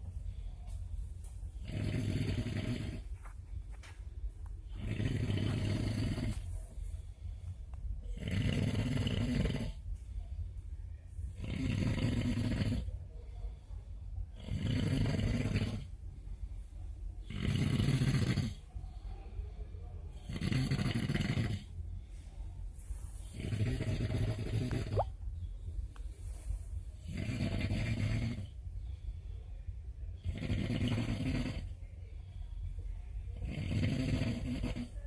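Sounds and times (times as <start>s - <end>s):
quiet breaths: 0.0s - 35.0s
man snoring heavily: 1.6s - 3.0s, 4.8s - 6.4s, 8.2s - 9.8s, 11.4s - 12.9s, 14.4s - 15.9s, 17.3s - 18.6s, 20.3s - 21.7s, 23.3s - 25.1s, 27.1s - 28.5s, 30.2s - 31.7s, 33.4s - 34.9s.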